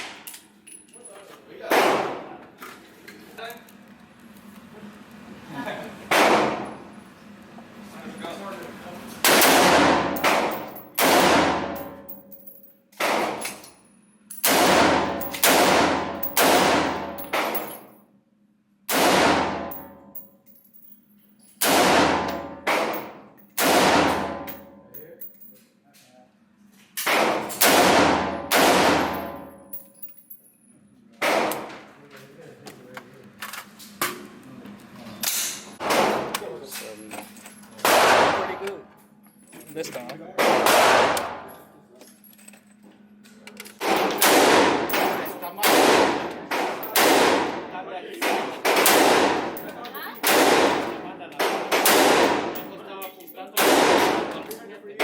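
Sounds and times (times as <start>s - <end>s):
gunshots: 6.1s - 6.6s, 9.2s - 11.8s, 14.4s - 17.6s, 18.9s - 19.7s, 21.6s - 24.5s, 27.1s - 29.3s, 37.8s - 38.6s, 40.4s - 41.4s, 43.8s - 49.6s, 50.2s - 52.7s, 53.6s - 54.3s.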